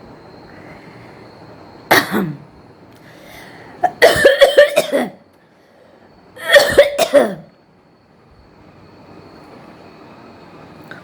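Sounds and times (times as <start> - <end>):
woman coughing: 1.9 - 2.4, 3.8 - 5.2, 6.4 - 7.5.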